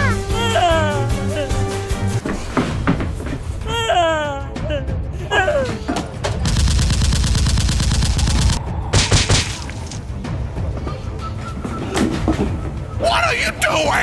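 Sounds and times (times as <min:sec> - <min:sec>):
background music: 0:00.0 - 0:14.0.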